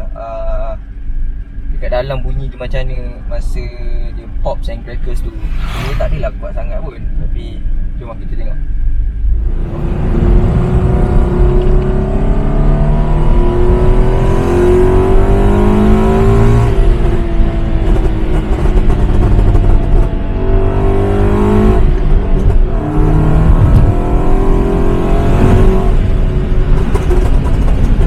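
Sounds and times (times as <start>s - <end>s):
car engine revving: 0.0s - 28.0s
exhaust pops and crackles: 17.8s - 20.1s, 22.0s - 22.7s, 26.4s - 28.0s.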